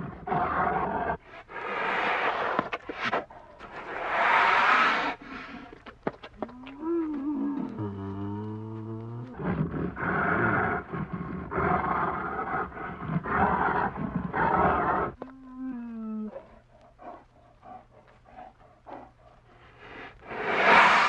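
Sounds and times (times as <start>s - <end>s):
bear roaring and moaning: 0.0s - 1.2s, 6.4s - 19.1s.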